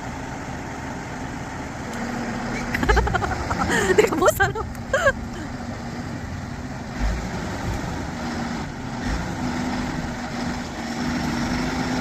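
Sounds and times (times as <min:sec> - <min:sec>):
heavy engine running: 0:00.0 - 0:12.0.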